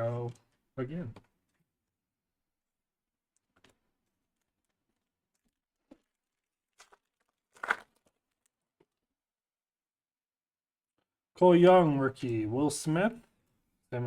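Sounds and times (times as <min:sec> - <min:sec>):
cards being handled: 0:06.8 - 0:08.1
foil card pack tearing: 0:06.8 - 0:08.2.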